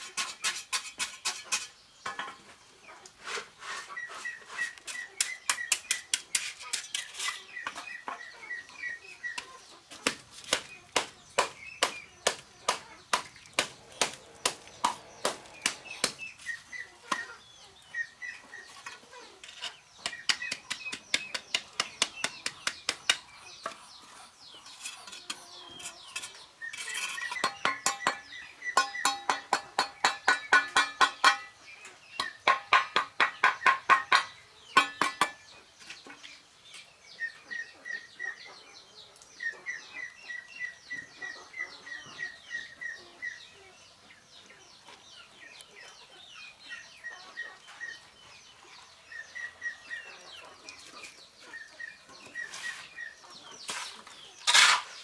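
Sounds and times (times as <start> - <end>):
small birds chirping: 0.0 - 55.0
hand tool striking: 9.4 - 16.3, 26.9 - 31.6, 32.2 - 35.4.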